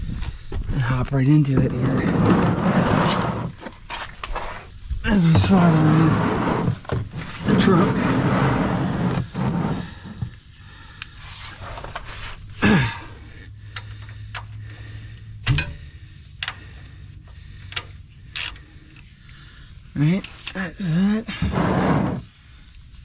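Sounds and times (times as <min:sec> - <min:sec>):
scraping rustle under truck: 0:01.3 - 0:13.5, 0:19.1 - 0:23.0
tools clicking on metal: 0:17.7 - 0:19.0.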